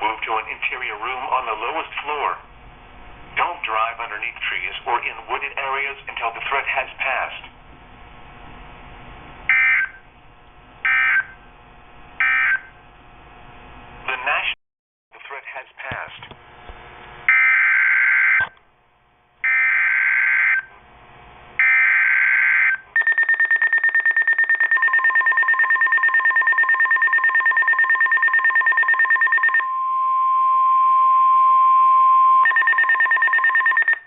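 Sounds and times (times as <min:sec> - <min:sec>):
steady warning tone: 0:09.5 - 0:10.1, 0:10.8 - 0:11.5, 0:12.2 - 0:12.8, 0:21.6 - 0:34.0
rapidly pulsing high beeping: 0:23.0 - 0:29.7, 0:32.4 - 0:34.0.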